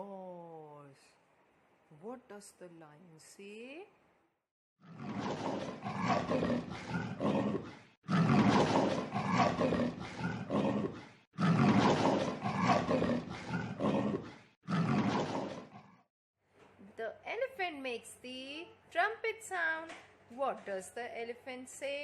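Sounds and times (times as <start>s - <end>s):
lion roaring: 4.8s - 16.0s.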